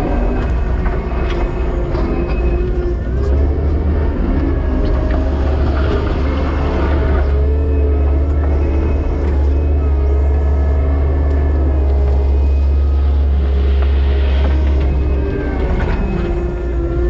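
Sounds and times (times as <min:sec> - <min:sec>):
diesel engine droning: 0:00.0 - 0:17.0
thin steady whine: 0:04.0 - 0:17.0.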